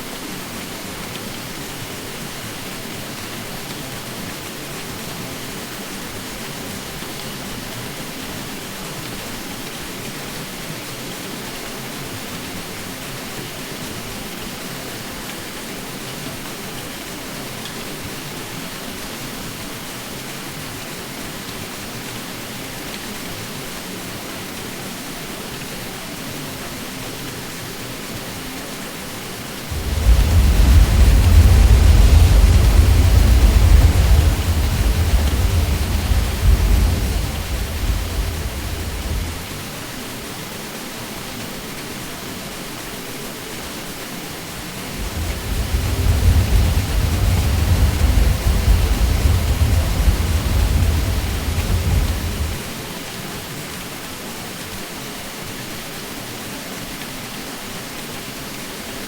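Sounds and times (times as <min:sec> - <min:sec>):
ceiling fan humming: 0:29.6 - 0:39.8, 0:44.5 - 0:52.7
loud deep rumble: 0:29.7 - 0:39.7, 0:44.6 - 0:52.7.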